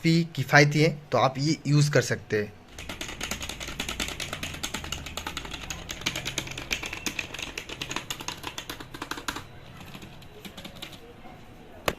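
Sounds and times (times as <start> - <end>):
keyboard typing: 2.7 - 11.2.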